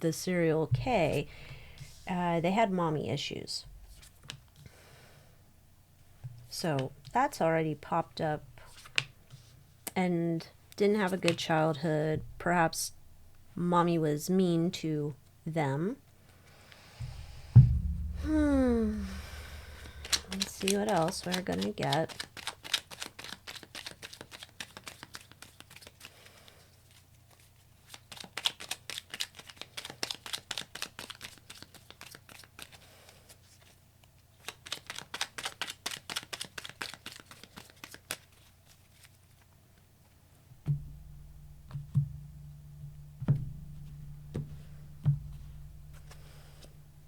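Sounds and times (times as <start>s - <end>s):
low steady hum: 0.2s - 4.0s, 10.0s - 22.0s, 40.5s - 47.0s
soft thumps: 0.7s - 2.1s, 17.0s - 20.7s, 40.6s - 47.0s
cards being shuffled: 19.9s - 26.2s, 26.9s - 32.8s, 34.4s - 39.5s.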